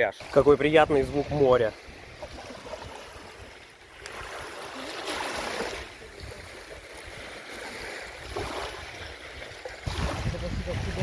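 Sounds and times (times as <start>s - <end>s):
small waves washing onto shore: 0.0s - 11.0s
wind rumbling on microphone: 8.0s - 11.0s.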